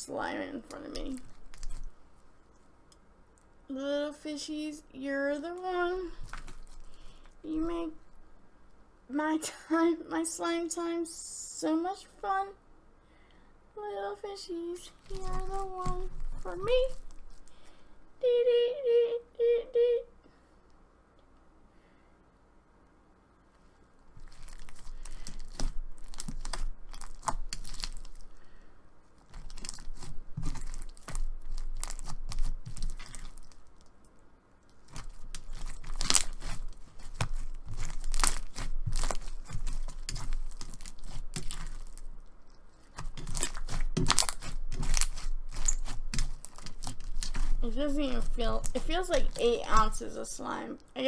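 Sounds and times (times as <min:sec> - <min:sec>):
slime crunching and crackling: 0:00.5 - 0:02.1, 0:05.4 - 0:08.0, 0:14.7 - 0:17.7, 0:24.1 - 0:50.1.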